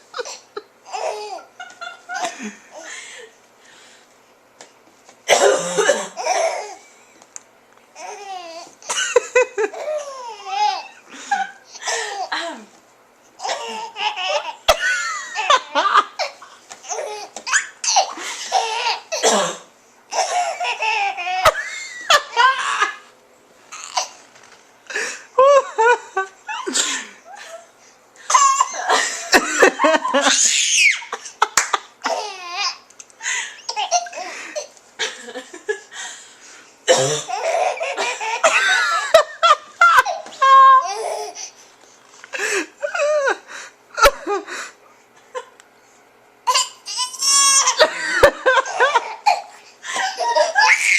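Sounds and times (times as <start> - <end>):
baby laughing: 0.1 - 2.4, 8.0 - 11.0, 13.4 - 19.2, 20.1 - 23.1, 28.3 - 32.9, 33.6 - 34.7, 37.2 - 41.4, 46.5 - 50.9.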